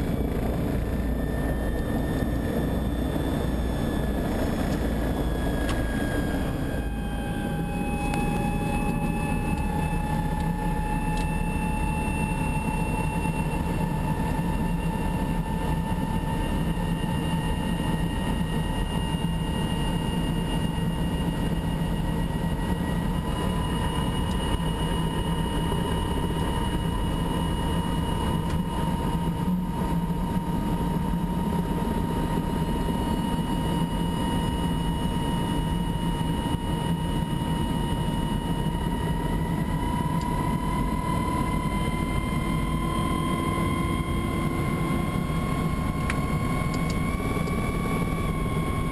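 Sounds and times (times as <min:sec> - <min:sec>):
engine running with whine: 0:00.0 - 0:48.9.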